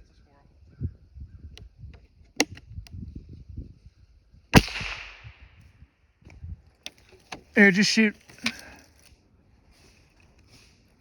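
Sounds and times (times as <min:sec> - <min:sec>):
rifle shot with echo: 0:04.6 - 0:05.6.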